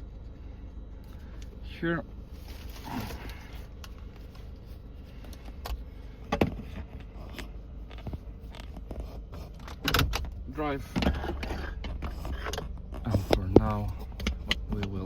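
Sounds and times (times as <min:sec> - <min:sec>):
car engine idling: 0:00.0 - 0:15.0
sharp clicks and knocks: 0:07.3 - 0:15.0.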